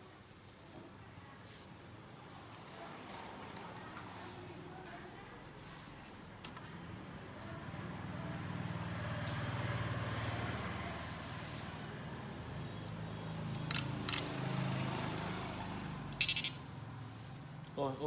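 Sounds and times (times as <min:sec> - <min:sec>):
short clicks: 0:16.2 - 0:16.7.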